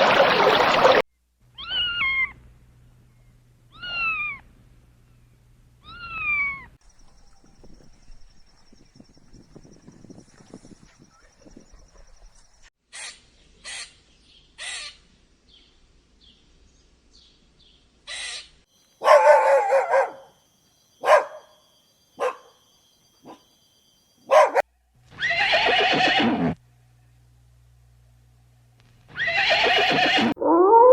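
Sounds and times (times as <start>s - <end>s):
animal calls: 25.2s - 26.4s.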